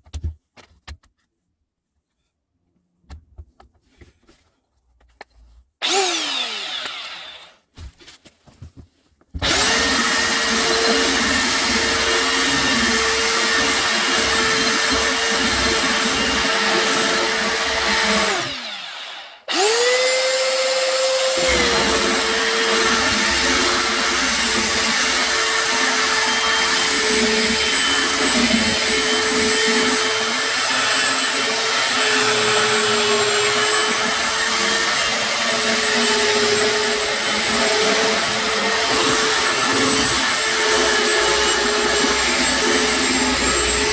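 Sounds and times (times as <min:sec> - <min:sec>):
electric sander whine: 0:09.4 - 0:43.9.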